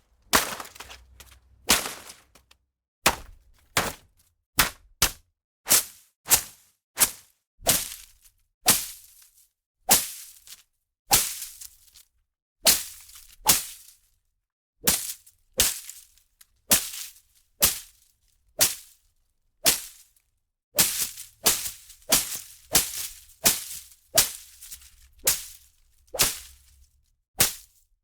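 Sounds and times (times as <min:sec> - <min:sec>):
foliage being whipped and slashed: 0:00.3 - 0:02.4, 0:19.7 - 0:19.9, 0:20.8 - 0:26.6.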